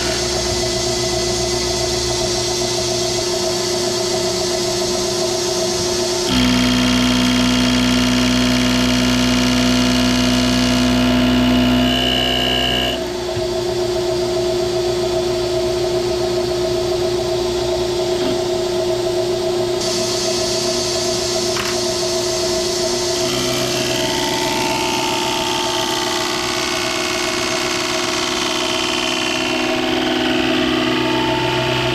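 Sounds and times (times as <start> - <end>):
machine tool running: 4.6 - 13.2, 22.6 - 31.9.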